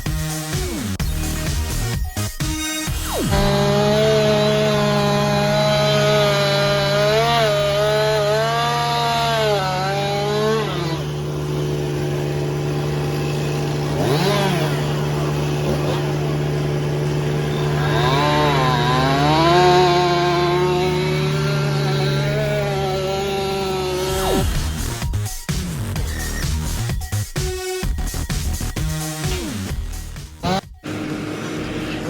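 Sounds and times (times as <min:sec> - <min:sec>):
chainsaw cutting branches: 0:02.8 - 0:25.4, 0:28.5 - 0:32.0.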